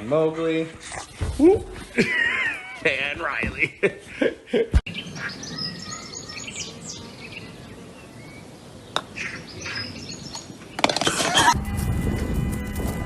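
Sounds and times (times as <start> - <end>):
high chirping: 4.9 - 10.9.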